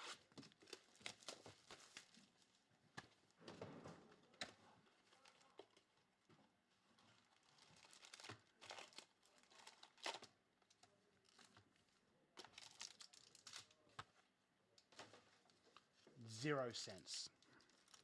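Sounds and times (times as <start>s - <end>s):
plastic wrapper crinkling and tearing: 0.0s - 2.6s, 5.0s - 5.9s, 7.1s - 14.0s, 17.4s - 18.0s.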